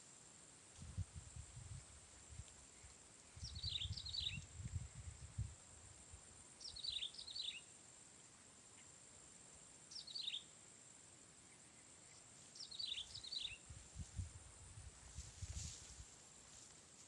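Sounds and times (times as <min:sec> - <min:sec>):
bird chirping: 0:02.8 - 0:04.5, 0:06.6 - 0:07.8, 0:09.9 - 0:10.6, 0:11.4 - 0:13.7.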